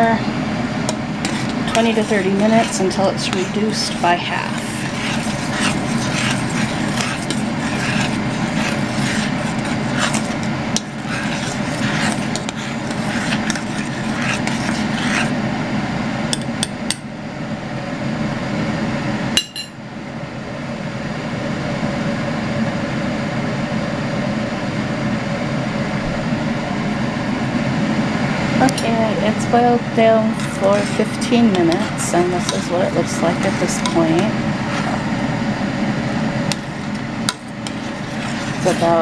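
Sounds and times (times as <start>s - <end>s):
steady hum: 0.0s - 39.0s
syrup bubbling in a pot: 0.5s - 15.6s, 30.2s - 39.0s.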